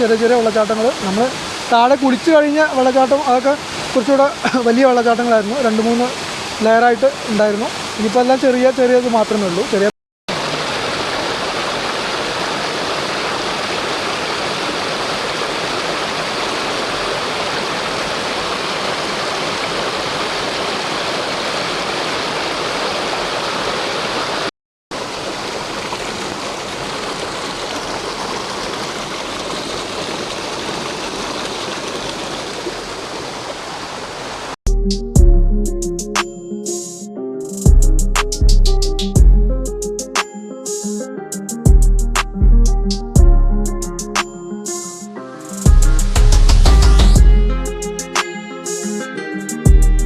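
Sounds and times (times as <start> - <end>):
water rushing over waterfalls: 0.0 - 34.6.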